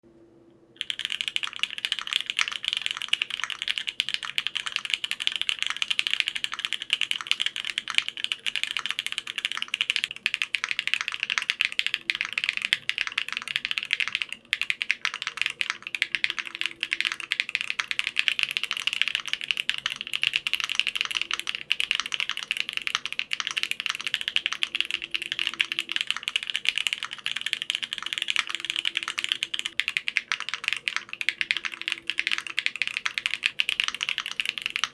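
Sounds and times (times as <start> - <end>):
typing on mechanical keyboard: 0.8 - 34.9.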